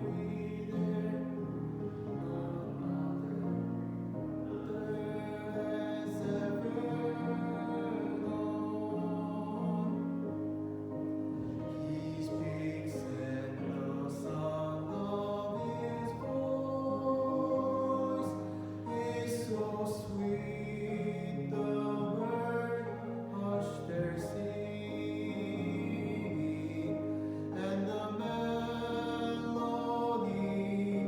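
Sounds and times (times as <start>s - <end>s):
hymn singing with instruments: 0.0s - 31.0s.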